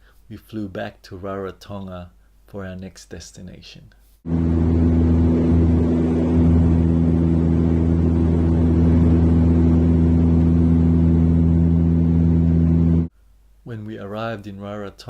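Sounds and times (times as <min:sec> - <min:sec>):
propeller aircraft engines droning: 0:04.3 - 0:13.1
rushing noise: 0:04.3 - 0:13.1.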